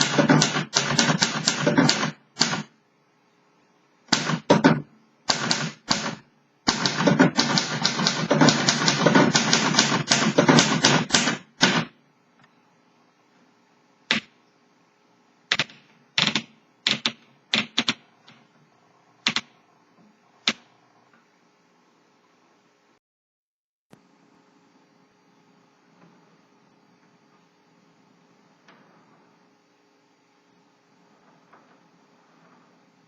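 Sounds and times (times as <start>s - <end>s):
manual typewriter typing: 0.0s - 2.7s, 4.1s - 11.9s, 15.5s - 18.4s, 19.2s - 19.5s.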